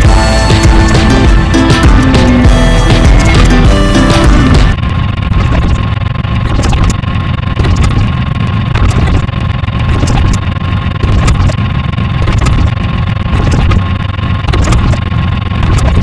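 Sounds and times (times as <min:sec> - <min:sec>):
thin steady whine: 0:00.0 - 0:16.0
crackling clicks: 0:04.6 - 0:16.0.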